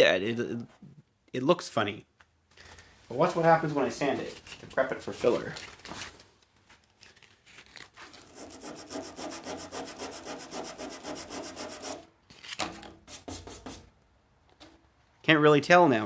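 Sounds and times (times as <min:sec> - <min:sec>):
sandpaper scraping on steel: 0:08.2 - 0:12.1.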